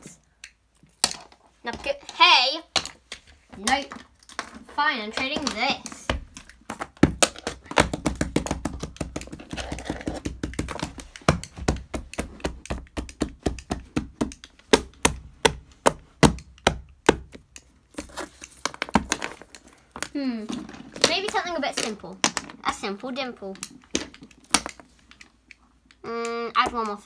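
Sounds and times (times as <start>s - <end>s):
sharp irregular clicks and taps: 5.1s - 20.2s, 21.0s - 27.0s.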